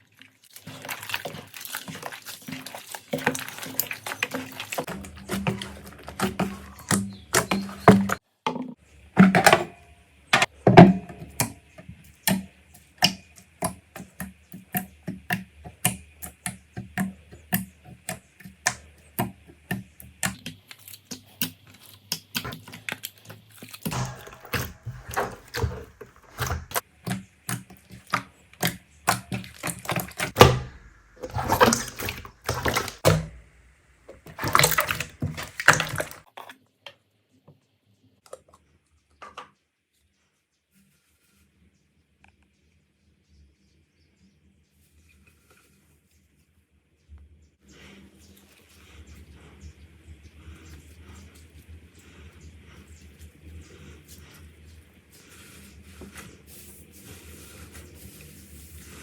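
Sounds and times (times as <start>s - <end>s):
slime crackling squishes: 0.0s - 8.2s, 18.6s - 36.3s.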